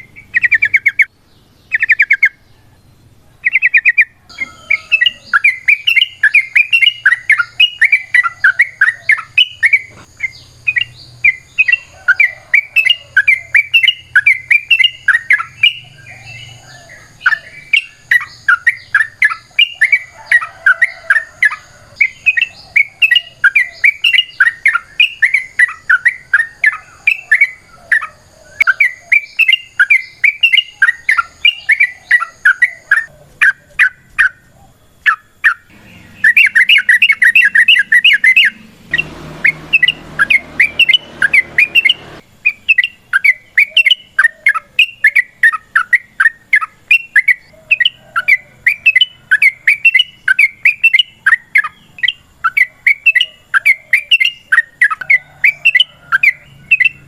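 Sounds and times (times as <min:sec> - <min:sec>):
bird singing bubbly chattering notes: 0:00.0 - 0:01.1, 0:03.4 - 0:16.5, 0:35.0 - 0:57.0.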